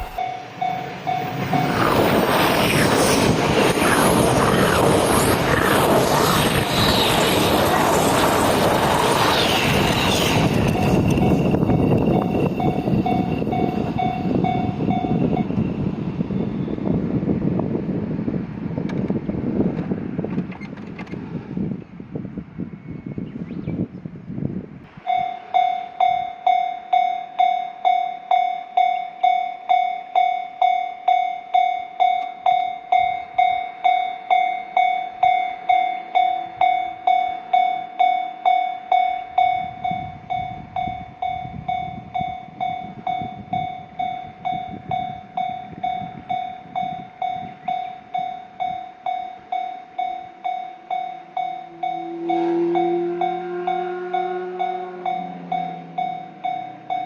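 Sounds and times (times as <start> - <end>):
railroad crossing bell dinging: 0.0 - 2.3, 9.7 - 17.2, 25.0 - 57.0.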